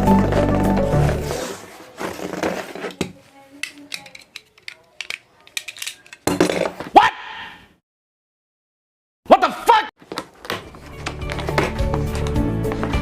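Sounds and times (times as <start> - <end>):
background music: 0.0 - 1.5, 10.6 - 13.0
cardboard packaging rustling: 0.0 - 3.6.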